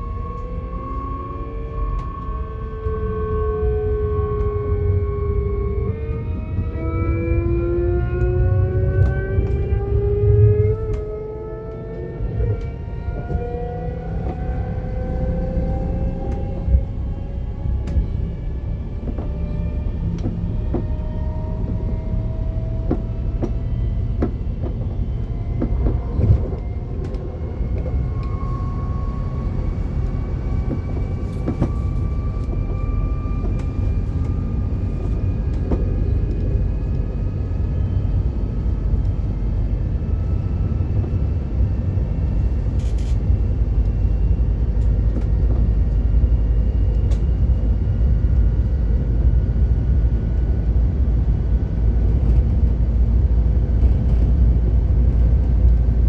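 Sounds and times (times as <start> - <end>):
rising traction motor whine: 0.0 - 56.0
electric train running: 21.6 - 38.7.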